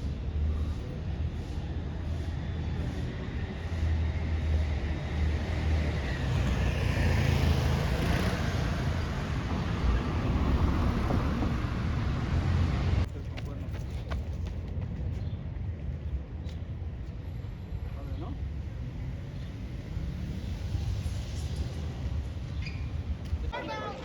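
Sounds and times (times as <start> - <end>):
traffic rumble: 0.0 - 24.0
car passing close by: 5.3 - 13.1.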